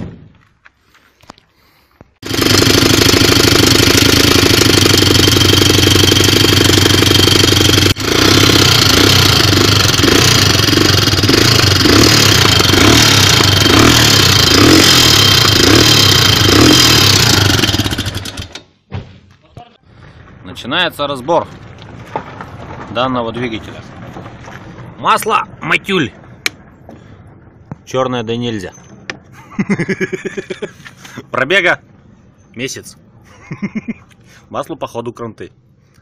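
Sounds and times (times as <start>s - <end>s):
motorcycle engine knocking: 2.2s - 18.5s.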